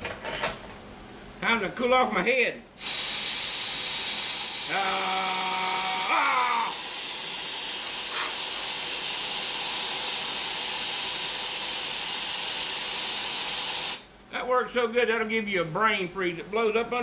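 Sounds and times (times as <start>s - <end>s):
compressed air hissing: 2.8s - 14.1s
pitched vocal sound: 4.7s - 6.9s.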